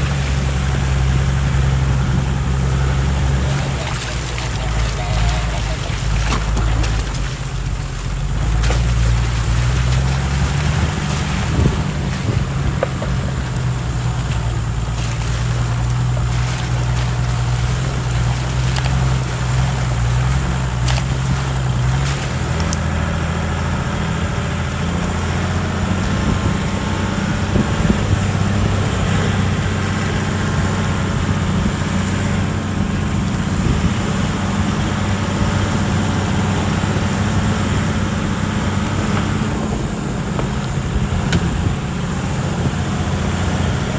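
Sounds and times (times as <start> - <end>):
constant hiss: 0.0 - 20.9
vehicle engine running: 0.0 - 43.9.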